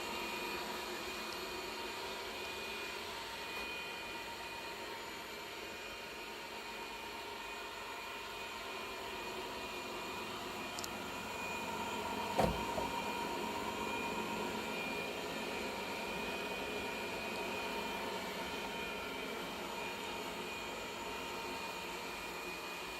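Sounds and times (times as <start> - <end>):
robot vacuum motor: 6.9 - 22.9
knock: 12.4 - 13.0.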